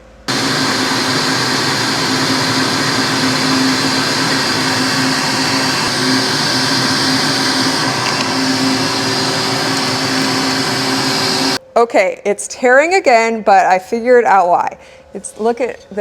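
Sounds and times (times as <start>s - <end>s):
shop vacuum running: 0.0s - 11.6s
drill press boring into hardwood: 0.3s - 11.6s.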